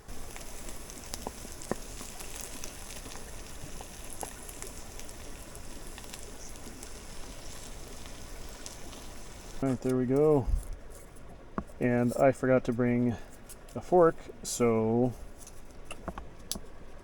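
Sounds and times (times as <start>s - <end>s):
food sizzling in a pan: 0.0s - 9.7s.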